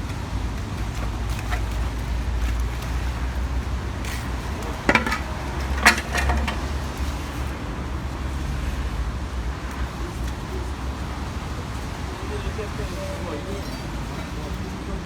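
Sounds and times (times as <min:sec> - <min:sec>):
street traffic rumble: 0:00.0 - 0:15.0
sharp metallic clanks: 0:04.9 - 0:06.9.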